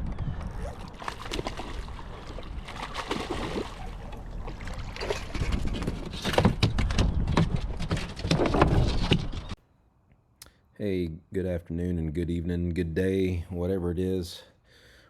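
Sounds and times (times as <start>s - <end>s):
knocks and rattles on a boat: 4.0s - 9.6s.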